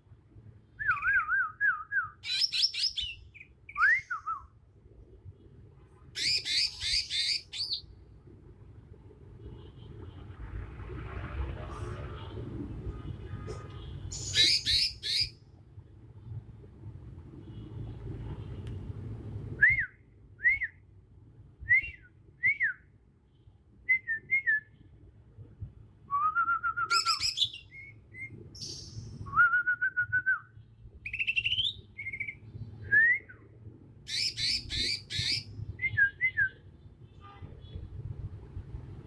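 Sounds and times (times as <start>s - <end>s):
bird singing whistles and buzzy phrases: 0.8s - 4.5s, 6.2s - 7.8s, 14.1s - 15.4s, 26.2s - 33.5s, 34.1s - 36.6s.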